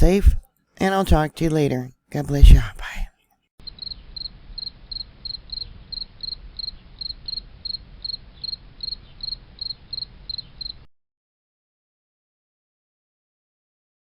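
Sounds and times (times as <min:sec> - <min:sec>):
crickets chirping: 0:03.6 - 0:10.9
low steady hum: 0:03.6 - 0:10.9.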